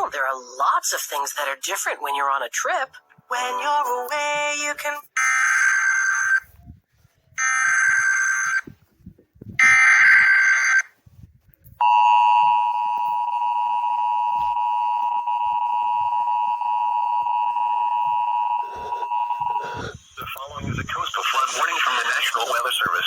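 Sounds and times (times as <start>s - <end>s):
two-tone attention signal: 9.6s - 10.9s
digital data bursts: 18.7s - 23.0s.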